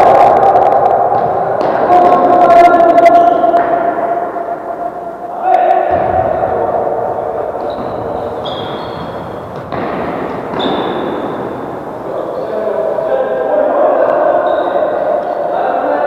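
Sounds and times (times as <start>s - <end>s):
ball kick thud: 9.5s - 11.3s.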